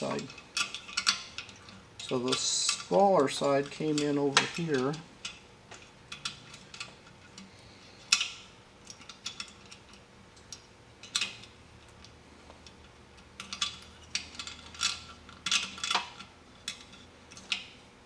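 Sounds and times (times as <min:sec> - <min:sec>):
small metal clicks and taps: 0:08.1 - 0:17.8.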